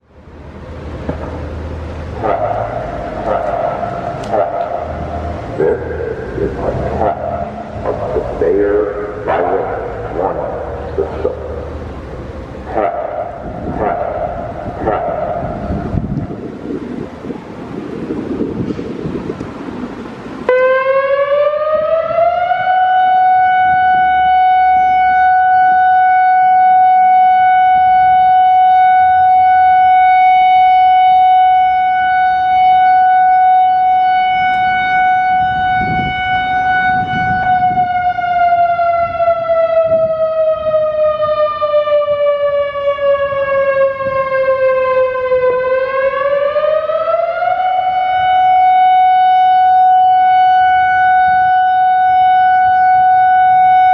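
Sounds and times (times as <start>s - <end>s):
electronic siren rising and falling: 20.5s - 53.9s.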